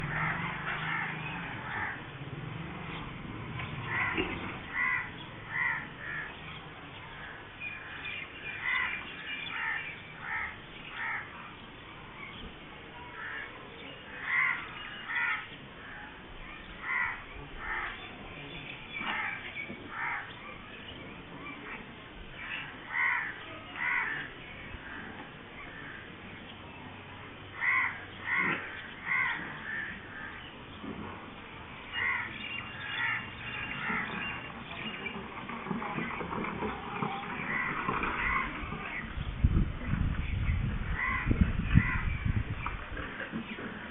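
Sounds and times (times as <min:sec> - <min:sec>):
crows cawing: 0:00.0 - 0:02.0, 0:03.9 - 0:06.4, 0:07.2 - 0:11.3, 0:13.2 - 0:13.5, 0:14.1 - 0:16.2, 0:16.8 - 0:18.0, 0:19.0 - 0:20.3, 0:22.4 - 0:26.2, 0:27.6 - 0:30.5, 0:31.9 - 0:34.3, 0:37.4 - 0:38.6, 0:41.0 - 0:42.1.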